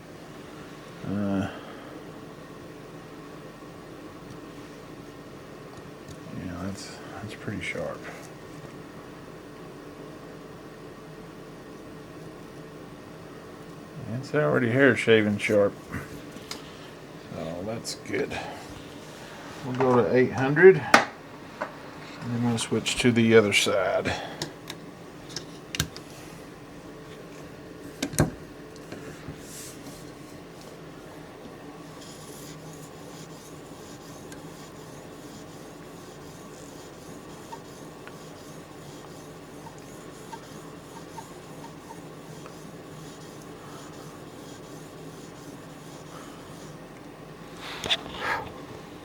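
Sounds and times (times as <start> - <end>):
sharpening stone rasping on blade: 32.0 - 46.8.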